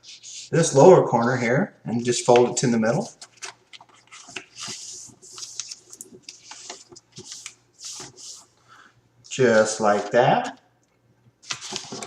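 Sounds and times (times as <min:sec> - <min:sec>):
paper crinkling: 0:03.2 - 0:08.5, 0:11.4 - 0:12.0
paper rustling: 0:03.2 - 0:08.6, 0:11.4 - 0:12.0.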